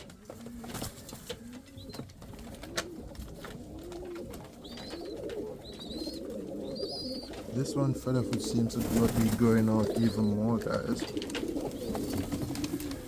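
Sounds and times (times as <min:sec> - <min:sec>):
pigeons cooing: 0:00.0 - 0:13.0.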